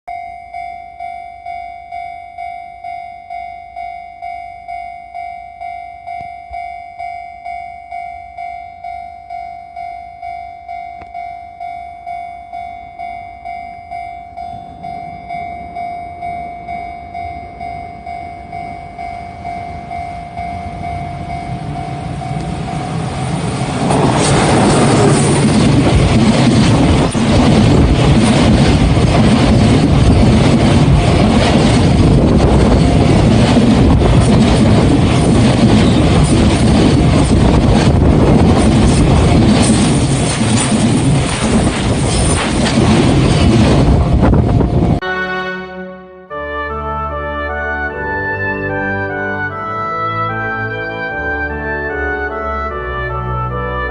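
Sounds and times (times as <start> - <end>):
level crossing bell ringing: 0.1 - 23.3
train wheels rumbling on rail: 13.0 - 45.0.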